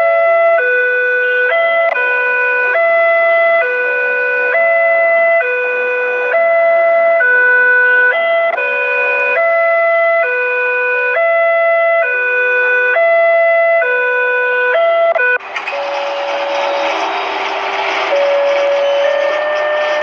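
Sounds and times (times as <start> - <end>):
multi-tone siren stepped melody: 0.0 - 20.0
held tones: 15.4 - 20.0
loud rushing noise: 15.4 - 20.0.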